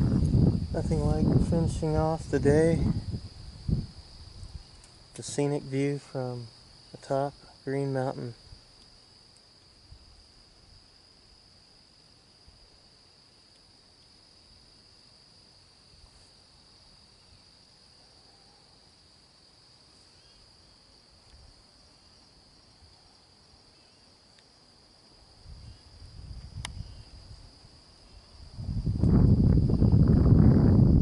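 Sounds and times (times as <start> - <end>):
low rumble on microphone: 0.0 - 8.7, 25.4 - 27.6, 28.4 - 31.0
insect chorus: 0.0 - 31.0
sharp click: 26.6 - 26.8.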